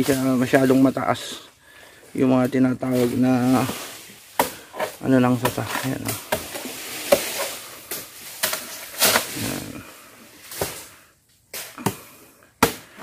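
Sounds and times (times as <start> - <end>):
rustling leaves: 0.0 - 13.0
blade chopping palm fronds: 2.8 - 9.7, 10.4 - 13.0.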